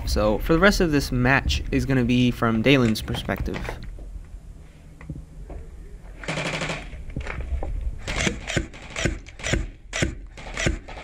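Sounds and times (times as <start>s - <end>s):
airsoft gun firing: 6.3s - 6.9s, 8.0s - 11.0s.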